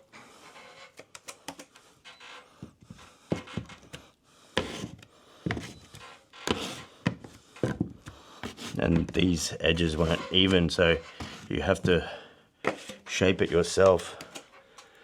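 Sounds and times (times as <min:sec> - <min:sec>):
scraper scraping cement: 0:04.6 - 0:12.1.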